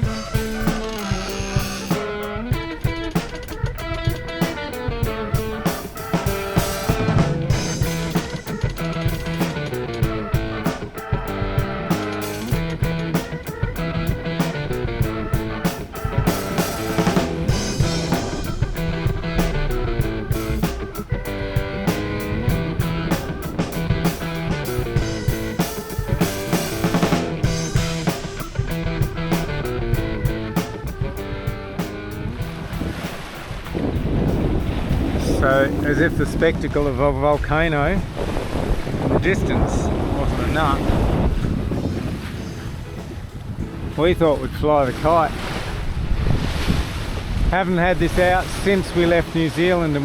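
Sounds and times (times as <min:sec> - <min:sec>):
drum kit beat: 0:00.0 - 0:36.2
guitar: 0:00.0 - 0:38.2, 0:38.8 - 0:45.9.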